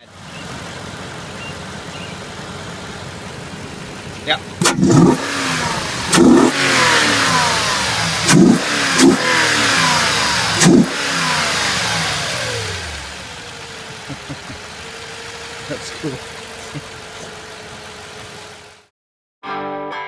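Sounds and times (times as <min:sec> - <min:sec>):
truck engine revving and idling: 0:00.0 - 0:18.9.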